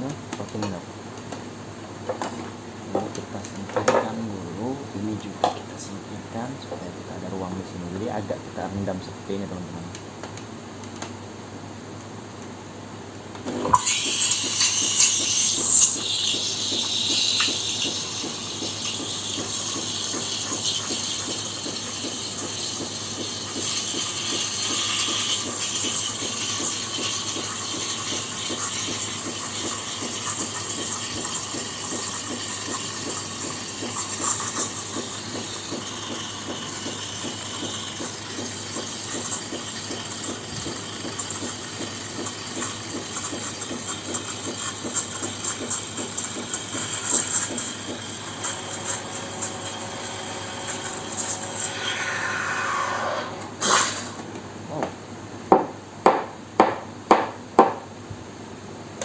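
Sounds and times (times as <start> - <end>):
steam wand hissing and sputtering: 13.7 - 54.3
falling steam whine: 46.7 - 54.3.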